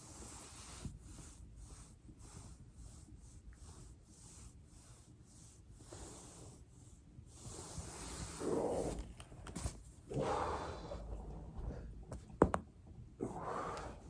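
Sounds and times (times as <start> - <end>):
body rubbing on foam roller: 0.0 - 10.4.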